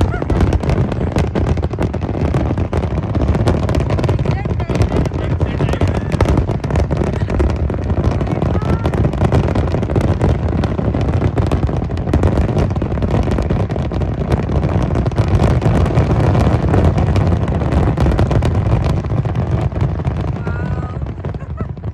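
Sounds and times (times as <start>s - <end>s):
fireworks booming and crackling: 0.0s - 21.9s.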